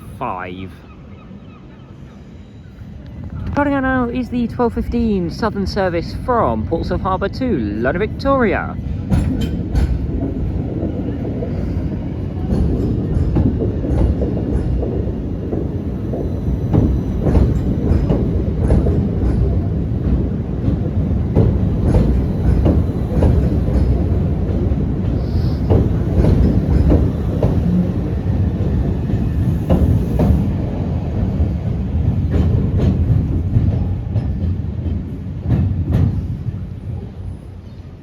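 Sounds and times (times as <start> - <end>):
electric train rumble: 0.0 - 38.0
wheels clicking over rail joints: 9.1 - 36.3.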